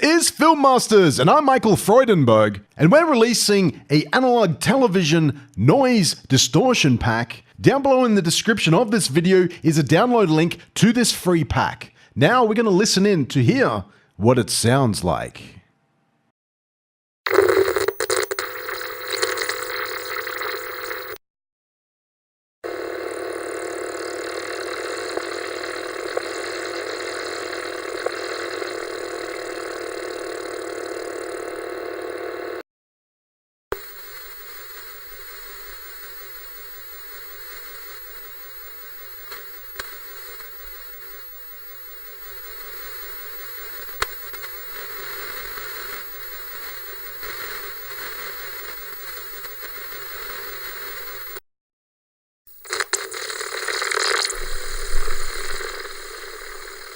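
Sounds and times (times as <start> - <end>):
tv static hiss: 17.3 - 21.2, 24.0 - 31.0, 33.8 - 51.4, 52.6 - 56.9
buzzing hum: 22.6 - 32.6, 33.7 - 51.4, 52.5 - 56.9.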